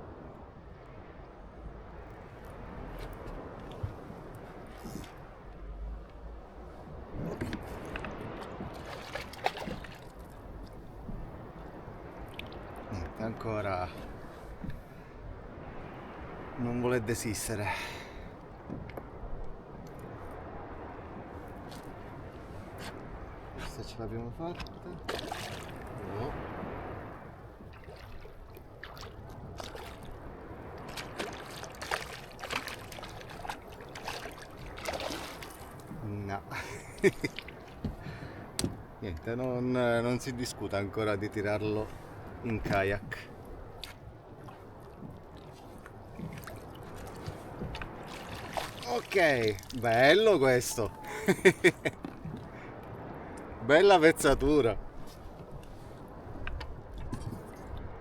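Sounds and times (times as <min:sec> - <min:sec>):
water sloshing around kayak hull: 0:00.0 - 0:58.0
short knocks: 0:37.8 - 0:38.9.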